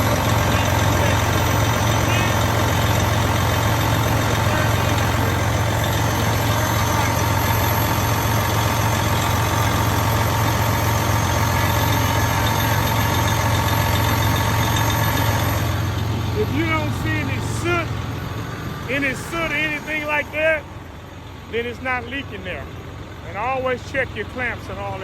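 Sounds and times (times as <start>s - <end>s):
diesel truck engine idling: 0.0s - 25.0s.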